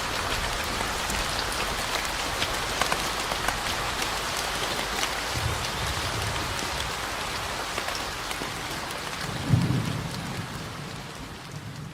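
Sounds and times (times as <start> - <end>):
steady rain falling: 0.0 - 11.9
low rumble of thunder: 5.3 - 7.1, 9.3 - 11.9.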